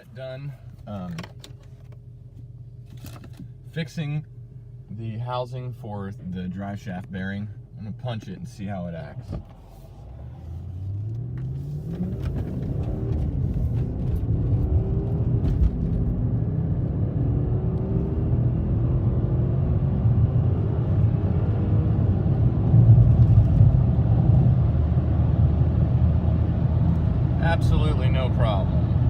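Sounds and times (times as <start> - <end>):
car engine accelerating hard: 9.6 - 29.0.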